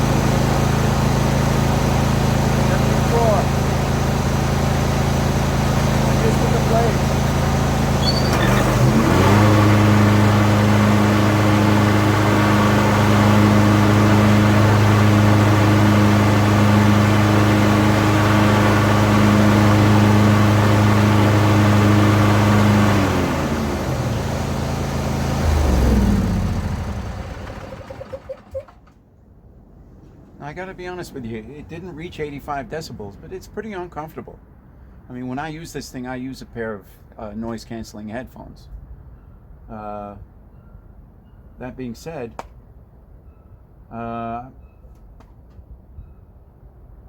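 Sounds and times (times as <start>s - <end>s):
lawn tractor engine running: 0.0s - 29.0s.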